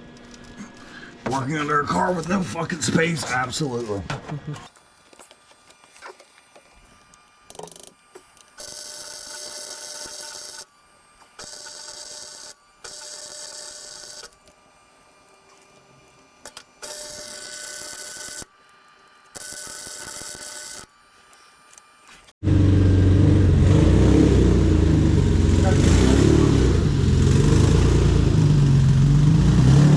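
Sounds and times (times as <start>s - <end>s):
welder arcing crackling hiss: 4.7s - 22.4s
loud engine rumble: 22.4s - 29.9s.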